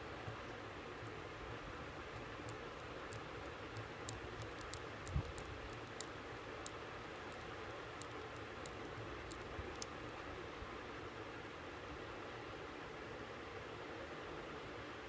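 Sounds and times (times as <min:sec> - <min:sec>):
small tools clicking and ticking: 0:02.2 - 0:10.0.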